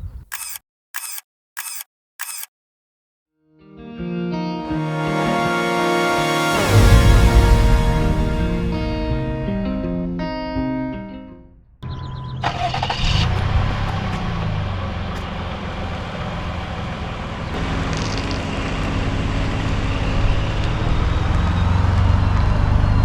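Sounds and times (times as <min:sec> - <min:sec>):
car engine rumble: 0:11.5 - 0:23.0.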